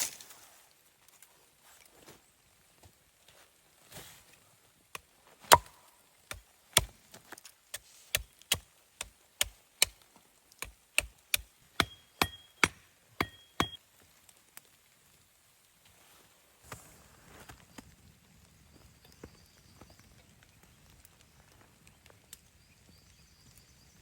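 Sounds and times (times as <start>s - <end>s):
axe chopping wood: 5.5s - 6.9s, 7.7s - 10.0s, 10.6s - 13.8s
axe strike metallic ring: 11.8s - 13.8s.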